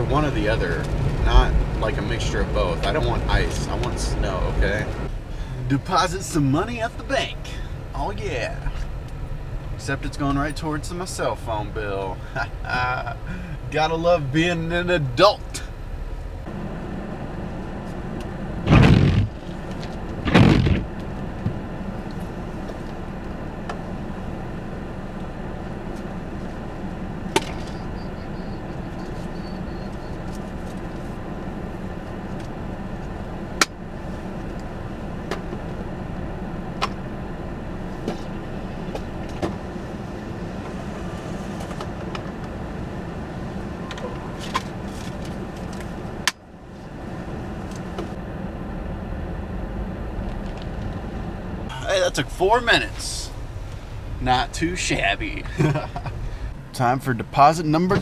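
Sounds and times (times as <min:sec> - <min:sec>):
car driving hum: 0:00.0 - 0:58.0
road noise: 0:00.0 - 0:58.0
loud thumps: 0:18.7 - 0:19.5, 0:20.2 - 0:21.6.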